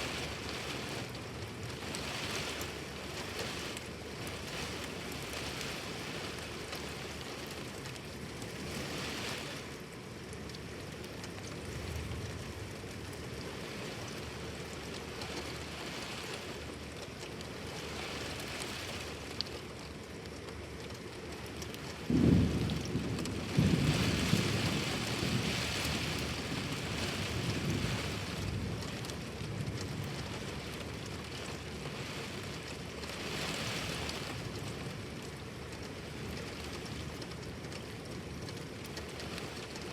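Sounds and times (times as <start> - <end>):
heavy rain: 0.0 - 39.9
thunderclap: 22.0 - 29.1
rumbling thunder: 22.0 - 30.4.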